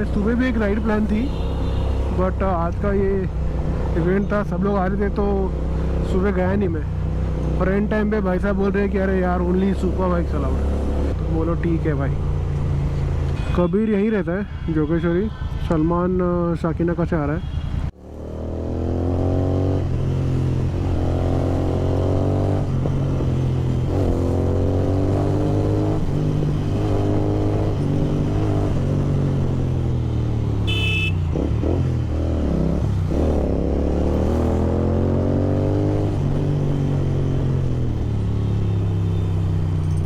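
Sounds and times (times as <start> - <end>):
horn beep: 0.7 - 2.1, 30.6 - 31.3
motorcycle engine revving through gears: 9.0 - 11.3, 18.0 - 40.0.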